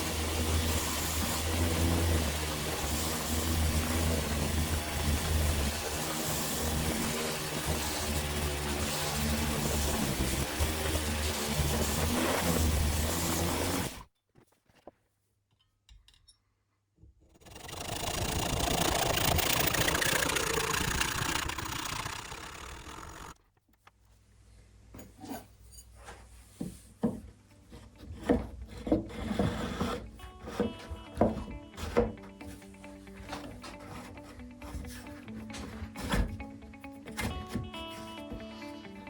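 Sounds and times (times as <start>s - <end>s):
power tool running: 0.0s - 14.0s, 17.3s - 23.4s.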